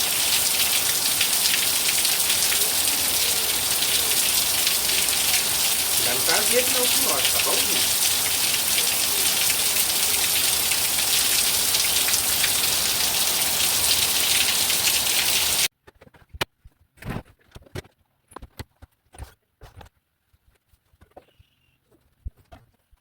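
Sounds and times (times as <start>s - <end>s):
heavy rain falling: 0.0s - 15.7s.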